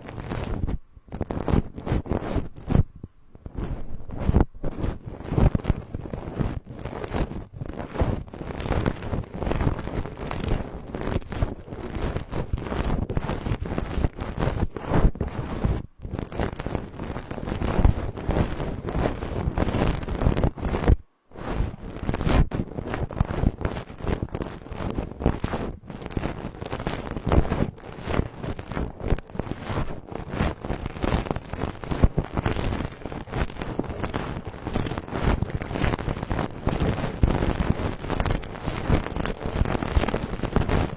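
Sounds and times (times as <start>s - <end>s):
rubbing and crackling on microphone: 0.0s - 40.9s.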